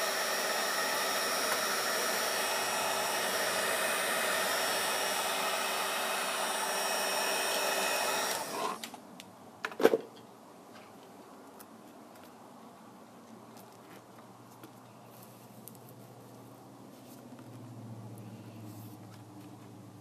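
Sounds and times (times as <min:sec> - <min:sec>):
hot-air tool blowing with whine: 0:00.0 - 0:08.9.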